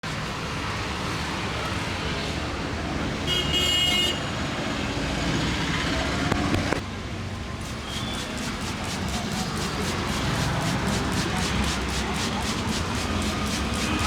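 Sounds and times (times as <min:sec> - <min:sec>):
street traffic noise: 0:00.0 - 0:14.0
vehicle horn: 0:03.3 - 0:04.3.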